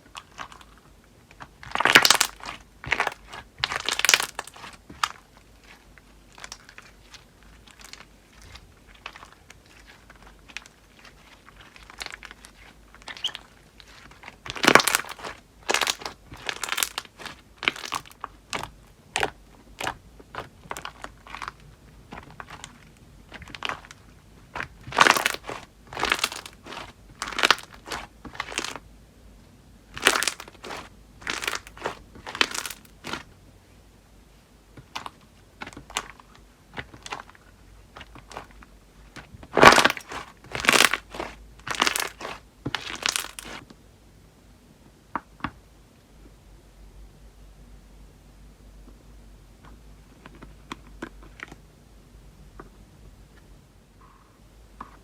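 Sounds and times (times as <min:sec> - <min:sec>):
slime crackling when squeezed: 0:01.6 - 0:21.6, 0:22.2 - 0:28.8, 0:29.9 - 0:33.2, 0:39.5 - 0:43.6.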